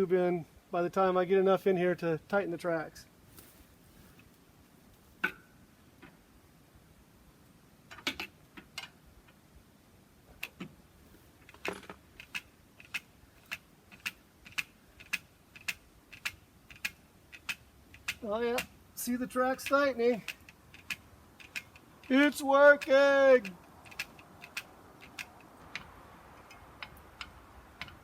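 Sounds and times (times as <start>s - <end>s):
grease gun clicking: 11.4s - 18.8s, 19.6s - 28.0s.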